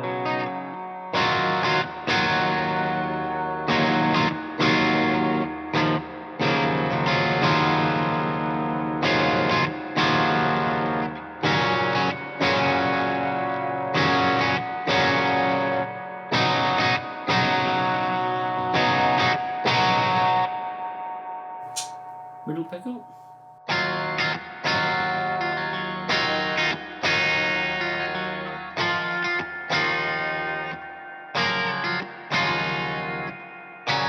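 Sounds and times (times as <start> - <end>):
distorted electric guitar chords: 0.0 - 20.4.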